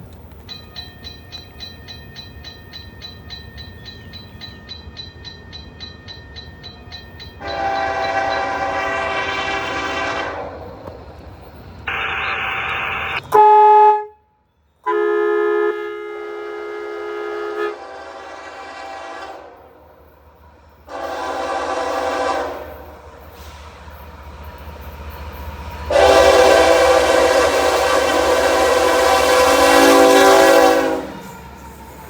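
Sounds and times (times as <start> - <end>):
locomotive air horn blasts: 7.4 - 10.5, 13.2 - 19.7, 20.9 - 22.9, 25.9 - 31.3.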